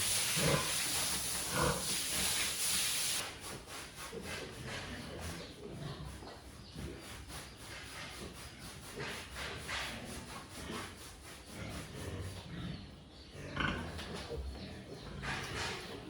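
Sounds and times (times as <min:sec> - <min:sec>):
pig grunting: 0:00.3 - 0:00.8, 0:01.5 - 0:02.4, 0:04.4 - 0:06.9, 0:11.6 - 0:16.0.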